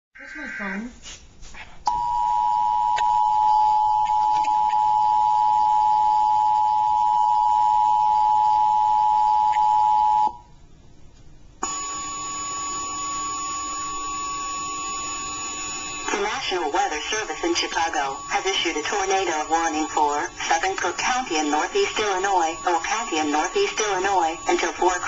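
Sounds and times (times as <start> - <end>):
quiet steady tone: 1.9 - 25.0
two-tone attention signal: 11.6 - 25.0.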